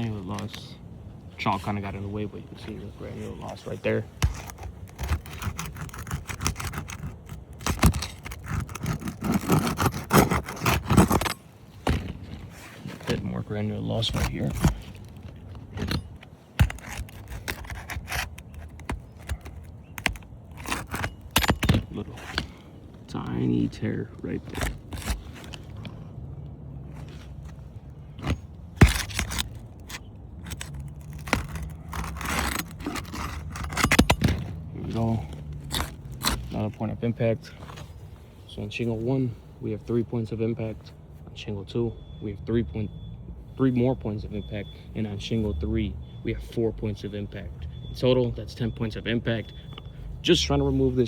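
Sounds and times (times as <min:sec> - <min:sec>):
shingles scraped with roofing tool: 0:02.6 - 0:26.0, 0:27.0 - 0:38.0.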